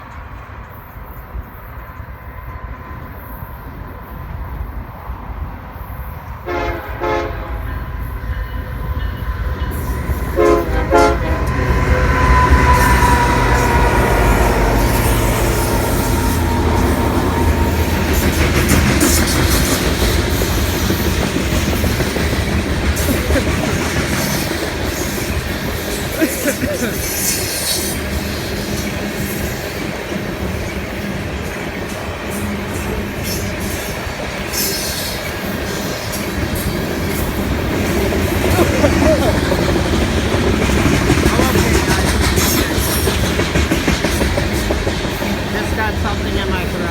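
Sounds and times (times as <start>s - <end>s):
diesel train rumbling past: 0.0s - 46.9s
train horn blasts: 6.4s - 19.4s.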